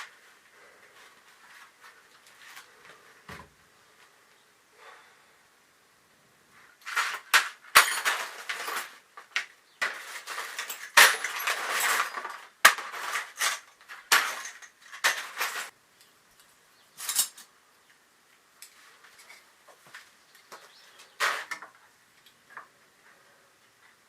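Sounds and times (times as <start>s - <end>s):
metal objects rattling and clinking: 6.8s - 15.8s, 17.0s - 17.5s.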